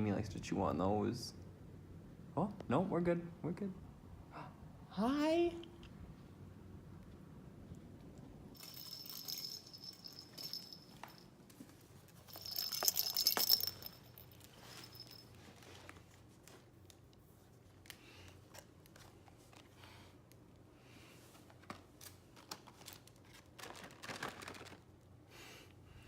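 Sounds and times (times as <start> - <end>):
small metallic jingling: 8.6 - 11.4, 12.1 - 15.7
rustling: 8.6 - 17.9.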